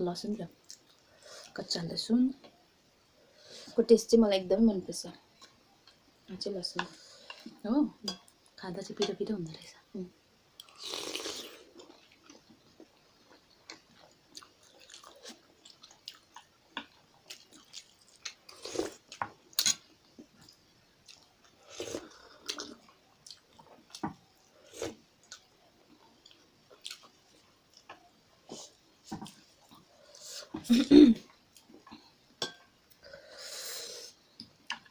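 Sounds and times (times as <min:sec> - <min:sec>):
chewing and wet mouth sounds: 0:10.6 - 0:19.2, 0:20.2 - 0:29.9
person slurping: 0:10.7 - 0:11.7.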